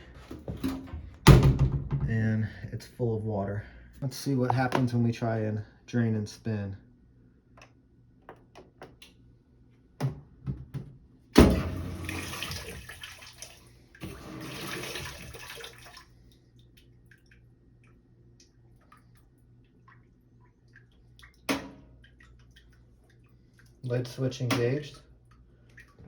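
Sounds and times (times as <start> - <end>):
water noise in washer tub: 11.4 - 26.0.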